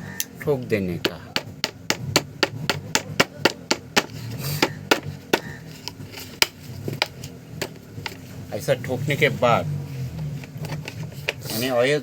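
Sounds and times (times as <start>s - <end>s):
sharp taps on metal part: 1.0s - 8.2s.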